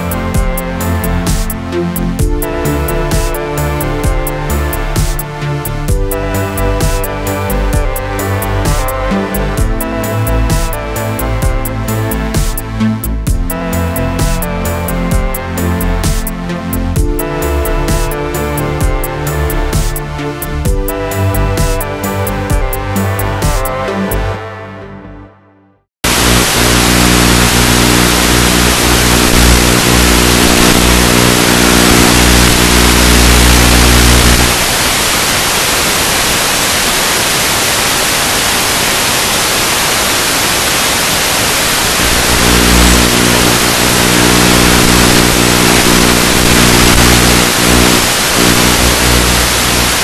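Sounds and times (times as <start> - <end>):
low multi-tone hum: 26.1 - 35.2, 41.9 - 50.0.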